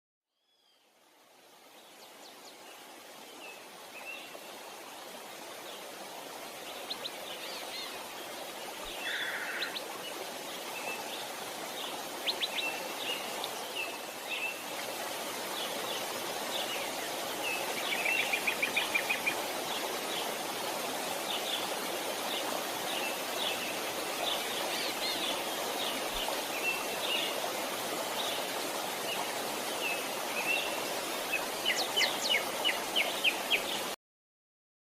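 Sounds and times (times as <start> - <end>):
flowing water rushing: 0.7 - 34.0.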